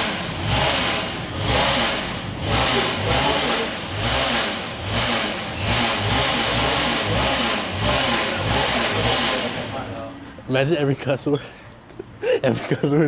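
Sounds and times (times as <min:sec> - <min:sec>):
engine revving in surges: 0:00.0 - 0:10.2.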